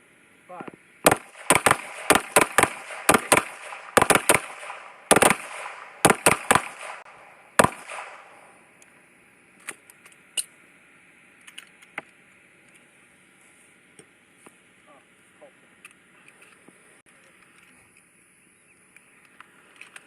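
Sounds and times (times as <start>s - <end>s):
pistol shots with echo: 1.0s - 8.6s.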